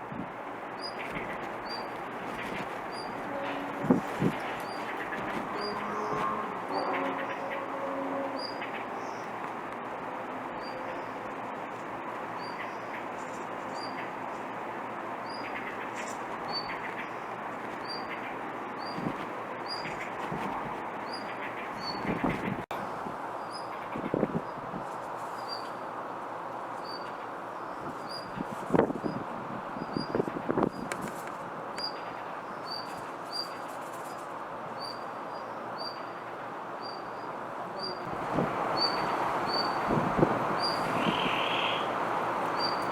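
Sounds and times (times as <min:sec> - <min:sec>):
steady background hiss: 0:00.0 - 0:42.9
bird calling: 0:34.8 - 0:42.9
background rush: 0:37.5 - 0:42.9.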